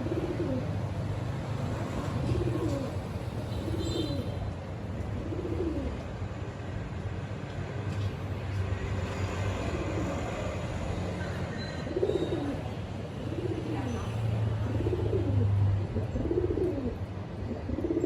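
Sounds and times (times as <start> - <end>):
pigeons cooing: 0.0 - 0.9, 2.1 - 4.3, 5.1 - 6.0, 9.6 - 10.5, 11.5 - 14.0, 14.6 - 18.0.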